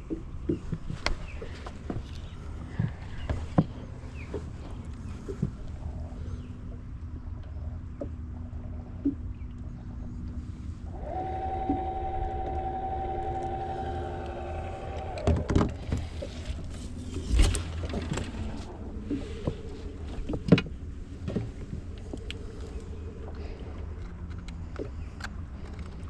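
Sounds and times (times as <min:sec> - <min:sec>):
steady whining tone: 0:10.1 - 0:25.0.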